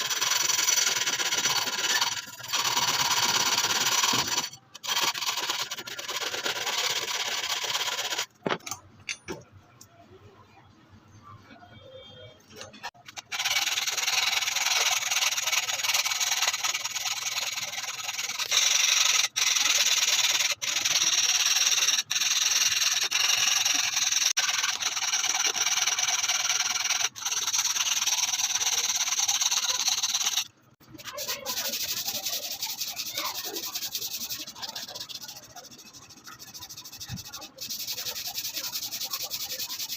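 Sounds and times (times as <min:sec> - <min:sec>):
abrasive rubbing like sanding: 0:31.0 - 0:39.9.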